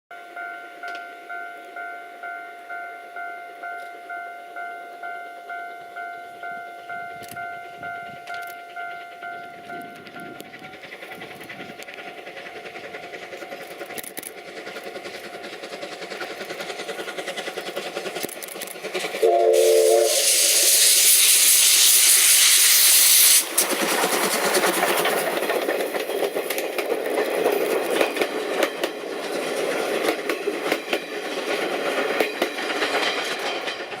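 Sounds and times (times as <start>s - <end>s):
train wheels clattering over rail joints: 8.2s - 19.3s, 20.2s - 34.0s
loud steam hissing rush: 10.2s - 26.0s
steam locomotive whistle: 19.2s - 23.5s.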